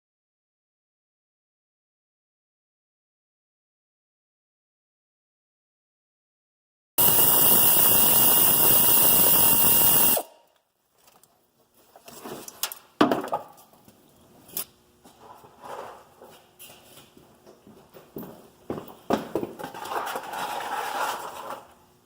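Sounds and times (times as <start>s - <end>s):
handheld power tool running: 7.0s - 10.3s.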